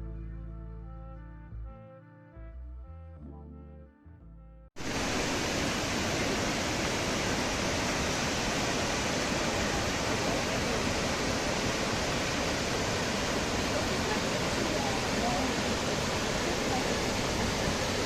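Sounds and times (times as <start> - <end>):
brass music: 0.0 - 4.7
waterfall rushing: 4.8 - 18.0.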